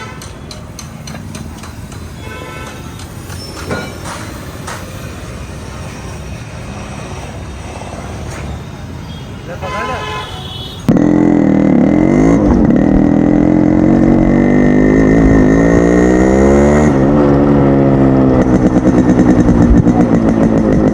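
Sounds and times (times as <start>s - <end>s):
motorcycle engine revving: 10.3s - 20.9s.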